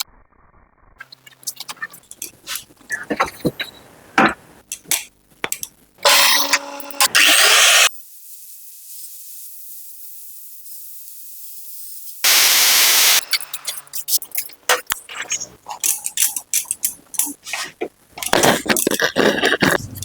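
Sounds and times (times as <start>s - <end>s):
sharp clicks and knocks: 4.2s - 7.1s
loud spraying hiss: 12.2s - 13.6s.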